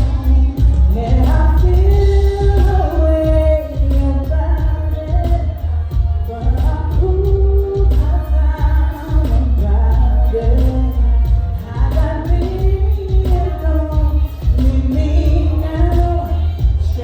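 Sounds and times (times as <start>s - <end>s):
heavy bass: 0.0s - 17.0s
live band music: 0.0s - 17.0s
person singing: 0.0s - 17.0s
steady drum beat: 0.0s - 17.0s.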